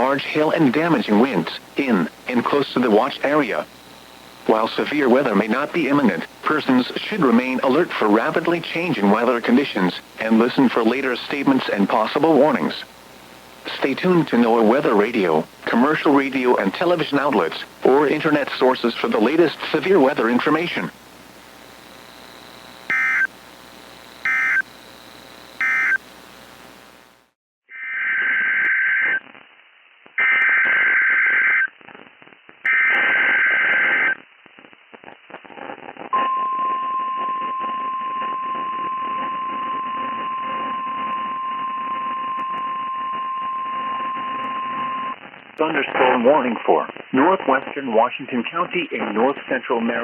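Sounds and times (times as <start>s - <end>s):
digital data bursts: 21.9s - 27.0s
warbling data tones: 22.0s - 23.4s, 24.0s - 26.4s
steady alarm tone: 22.9s - 23.4s, 24.2s - 26.1s, 36.2s - 45.2s.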